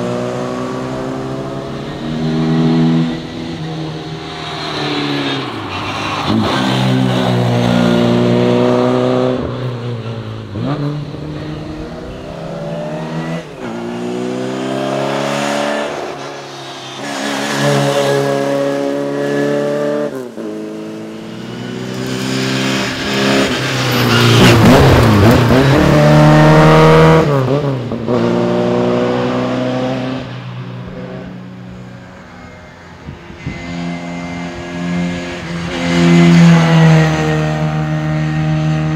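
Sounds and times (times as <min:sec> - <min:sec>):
rally car engine accelerating: 0:17.0 - 0:30.3.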